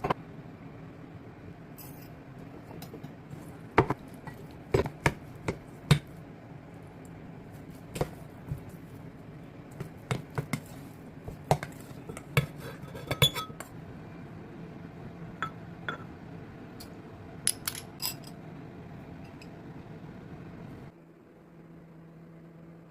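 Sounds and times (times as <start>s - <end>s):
steady low hum: 0.0s - 22.9s
dishes and utensils clinking: 1.8s - 3.2s, 11.5s - 13.7s, 17.5s - 18.4s.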